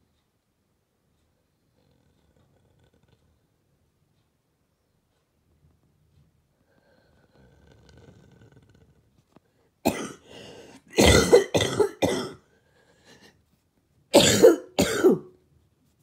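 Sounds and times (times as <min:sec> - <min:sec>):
person coughing: 0:09.8 - 0:12.4, 0:14.1 - 0:15.3.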